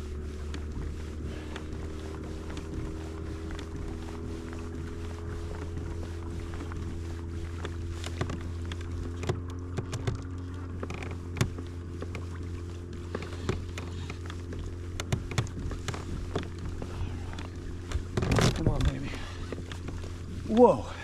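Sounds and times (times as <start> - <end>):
boat motor humming: 0.0 - 21.0
light clicks and taps: 7.6 - 20.7.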